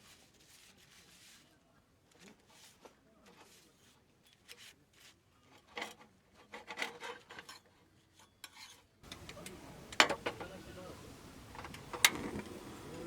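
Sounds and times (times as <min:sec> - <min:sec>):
scraping and rubbing strokes: 0:00.0 - 0:05.8.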